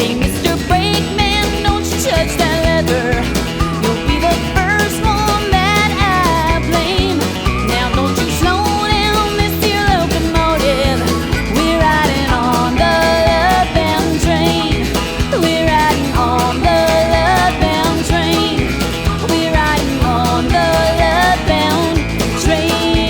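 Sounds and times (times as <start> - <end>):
bass guitar: 0.0 - 23.0
drums steady beat: 0.0 - 23.0
guitars: 0.0 - 23.0.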